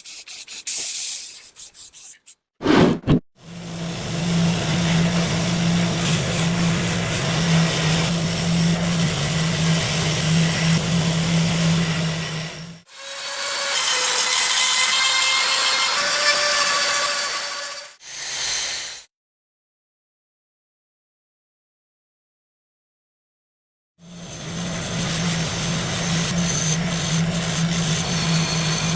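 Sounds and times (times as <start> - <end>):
power tool grinding: 3.8 - 18.0, 24.1 - 28.9.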